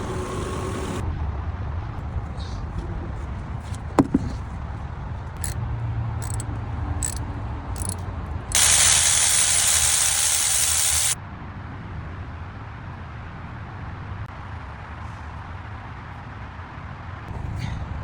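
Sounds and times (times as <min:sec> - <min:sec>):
loud steady hiss: 0:07.8 - 0:11.2.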